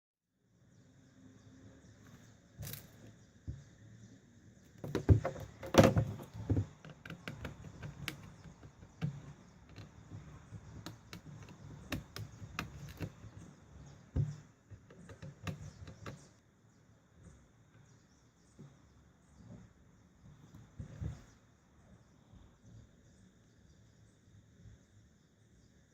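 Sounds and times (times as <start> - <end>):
hands clicking on plastic case: 4.8 - 13.4, 14.2 - 16.3.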